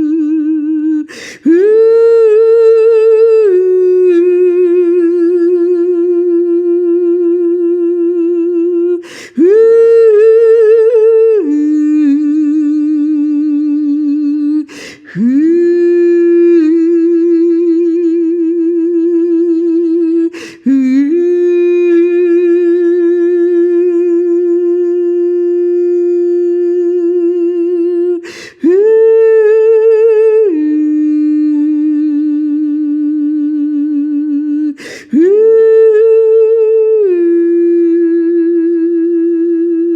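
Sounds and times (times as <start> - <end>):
woman singing wordless held tones: 0.0 - 39.9
woman breathing in: 1.1 - 1.4, 9.0 - 9.4, 14.7 - 15.2, 20.3 - 20.6, 28.2 - 28.6, 34.8 - 35.1.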